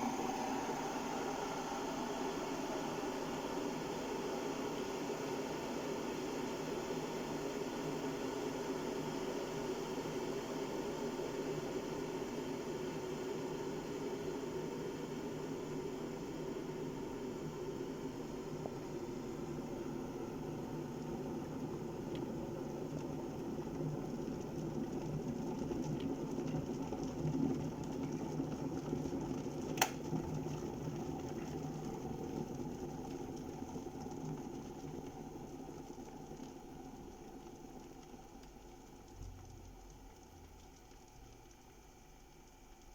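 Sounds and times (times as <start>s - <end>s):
kettle boiling water: 0.0s - 42.9s
kettle switch click: 29.8s - 30.0s.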